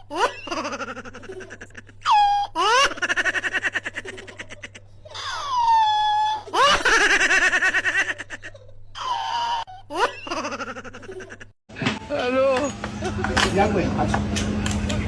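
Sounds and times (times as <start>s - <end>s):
high-pitched giggling and laughter: 0.0s - 11.6s.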